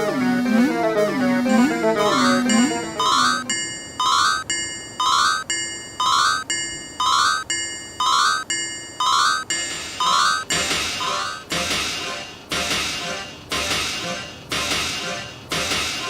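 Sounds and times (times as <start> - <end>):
electronic level crossing chime: 1.5 - 11.5.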